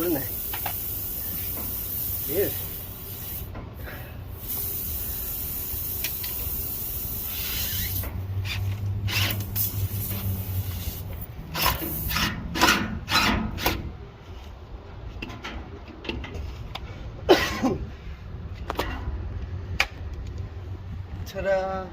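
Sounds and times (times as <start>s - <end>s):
steady hiss: 0.0s - 12.2s
tool scraping tire: 7.4s - 13.9s.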